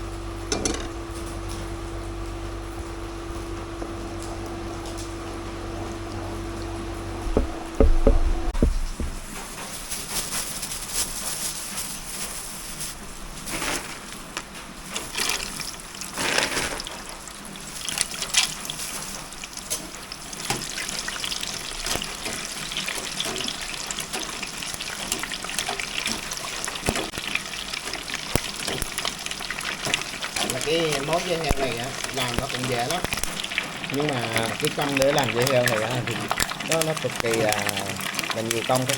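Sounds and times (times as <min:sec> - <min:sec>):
tap water splashing in sink: 0:28.1 - 0:38.9.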